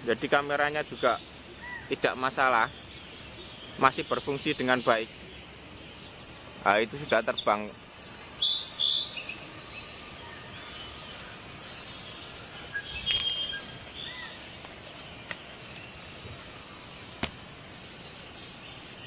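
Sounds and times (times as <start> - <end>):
steady high-pitched hum: 0.0 - 19.0
bird chirps: 7.0 - 14.4.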